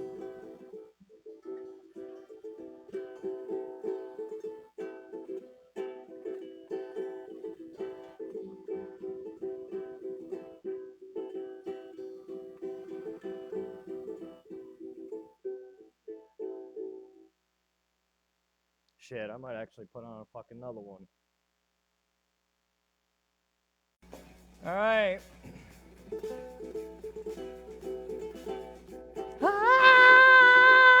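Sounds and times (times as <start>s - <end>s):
guitar strumming chords: 24.1s - 31.0s.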